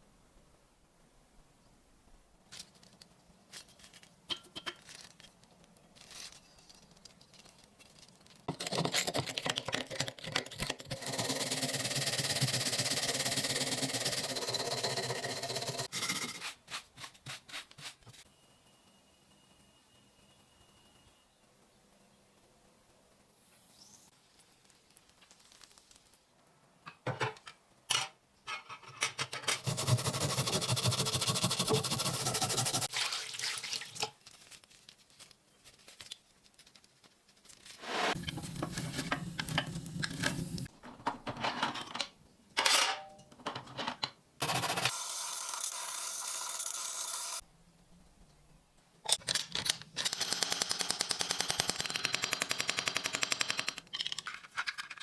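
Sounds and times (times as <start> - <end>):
tool grinding rough noise: 11.0 - 16.2, 29.6 - 32.9.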